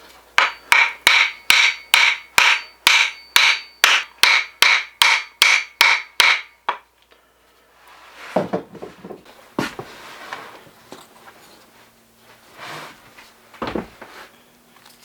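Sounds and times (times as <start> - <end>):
handling knocks and rubbing: 7.9 - 14.4.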